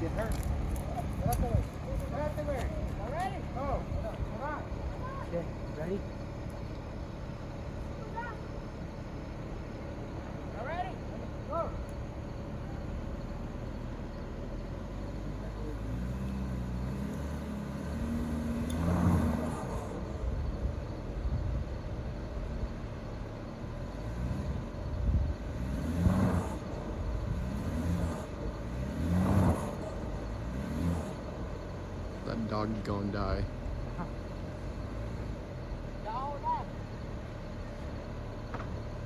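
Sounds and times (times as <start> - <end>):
car engine revving hard: 15.7 - 20.6, 23.8 - 33.0.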